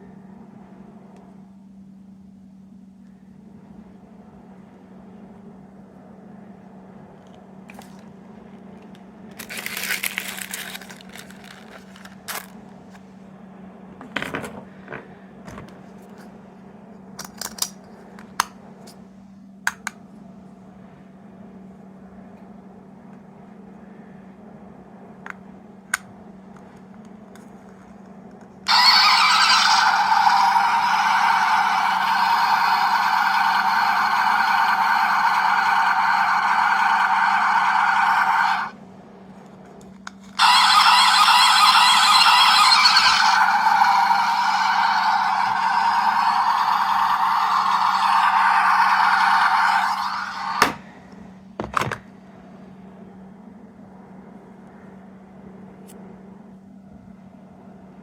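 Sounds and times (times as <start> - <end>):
steady low hum: 0.0 - 58.0
plastic toys rustling and clicking: 7.7 - 8.0, 8.8 - 12.6
toy speaker playing recorded sound: 28.7 - 38.7, 40.4 - 50.6.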